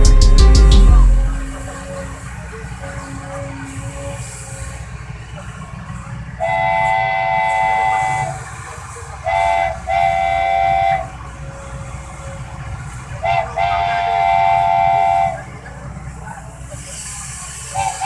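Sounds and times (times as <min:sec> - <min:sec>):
multi-tone horn blasts: 0:00.0 - 0:05.6, 0:06.2 - 0:11.8, 0:13.2 - 0:15.5
low engine rumble: 0:00.0 - 0:18.0.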